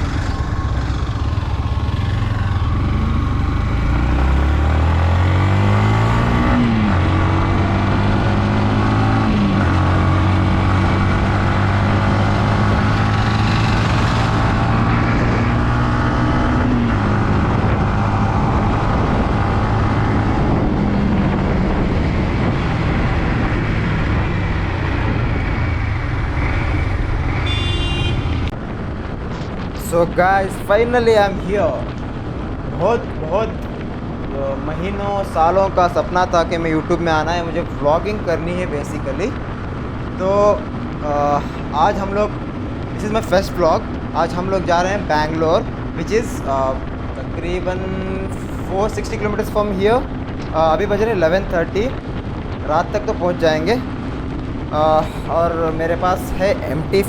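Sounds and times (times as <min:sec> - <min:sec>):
motorcycle engine pulling away: 0:00.0 - 0:28.5.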